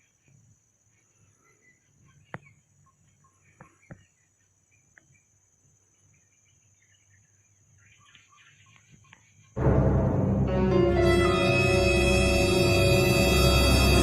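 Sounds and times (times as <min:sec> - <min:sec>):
bird chirps: 0:00.0 - 0:09.6
steady high-pitched hiss: 0:00.0 - 0:14.0
loud ominous music: 0:09.6 - 0:14.0.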